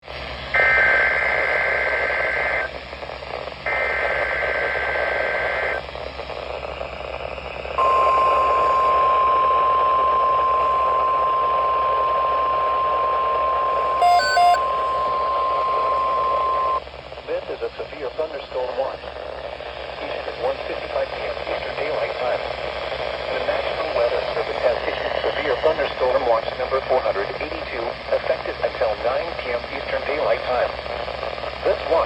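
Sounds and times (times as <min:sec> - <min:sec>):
radio hiss: 0:00.1 - 0:32.0
high-pitched alarm tone: 0:07.8 - 0:16.8
short beeps: 0:07.8 - 0:16.8
warbling data tone screech: 0:07.8 - 0:16.8.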